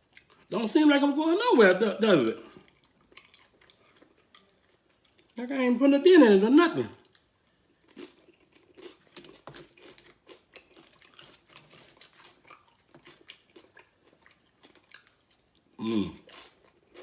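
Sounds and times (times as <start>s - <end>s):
person chewing crunchy chips: 2.5s - 5.4s, 7.0s - 17.0s.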